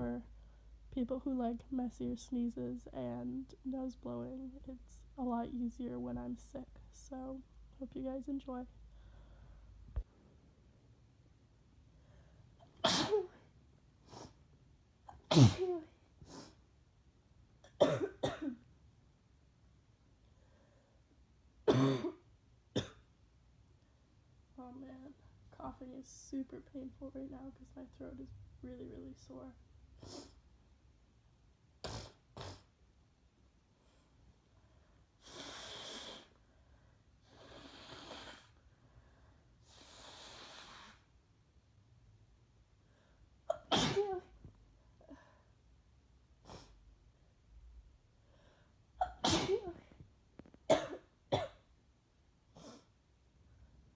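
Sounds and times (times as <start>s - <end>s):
person coughing harshly: 12.8s - 13.4s, 15.2s - 15.8s, 17.7s - 18.6s, 21.7s - 22.2s, 22.8s - 23.0s, 43.5s - 44.3s, 49.0s - 49.8s, 50.7s - 51.6s
hissy nasal breaths: 35.2s - 36.4s.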